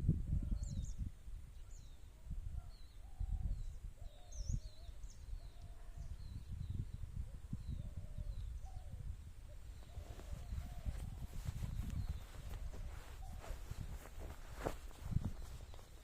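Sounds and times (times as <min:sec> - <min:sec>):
wind buffeting microphone: 0:00.0 - 0:16.0
birds chirping: 0:01.6 - 0:16.0.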